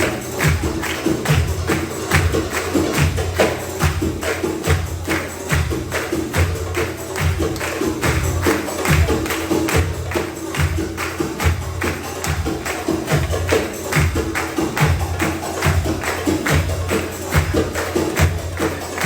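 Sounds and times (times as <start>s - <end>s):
goblet drum solo: 0.0s - 19.0s.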